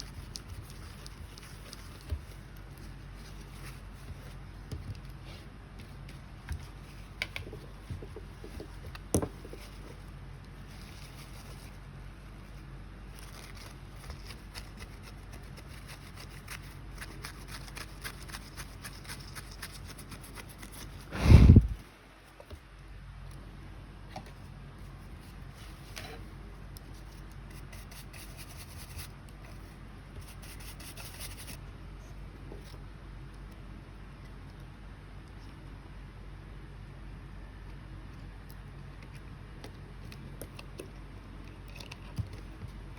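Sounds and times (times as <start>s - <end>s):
scratching and clicking hand work: 0.0s - 11.7s, 13.2s - 21.1s
low steady hum: 0.0s - 42.9s.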